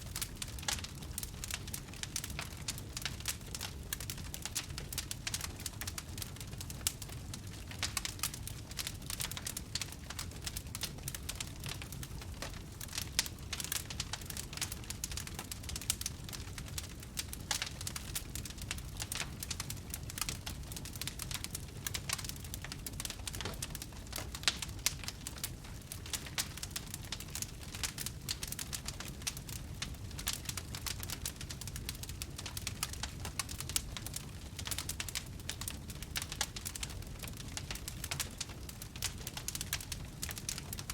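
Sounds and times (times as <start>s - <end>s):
fire crackling and popping: 0.0s - 40.9s.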